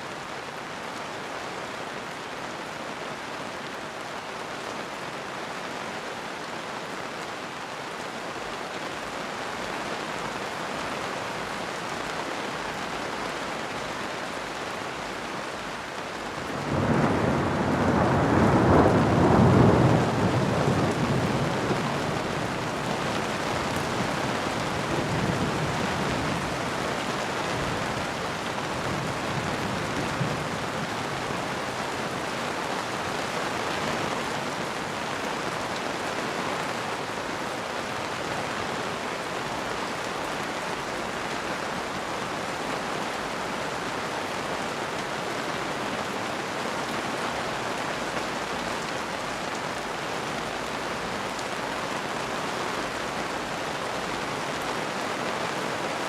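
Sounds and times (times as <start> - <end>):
steady rain: 0.0 - 56.0
low thunder rumble: 16.6 - 26.6.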